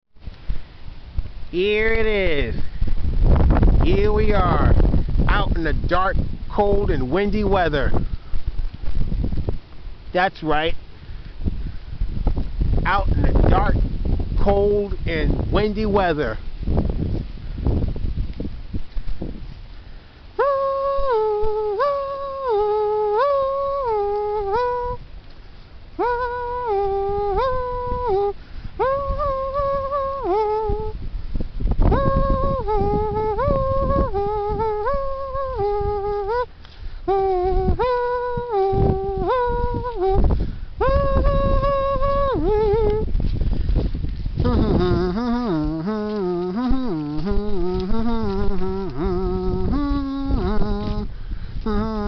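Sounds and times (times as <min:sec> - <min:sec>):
wind rumble on microphone: 0:00.2 - 0:52.0
person humming a tune: 0:20.4 - 0:25.0, 0:26.0 - 0:31.0, 0:31.8 - 0:43.2, 0:44.3 - 0:52.0.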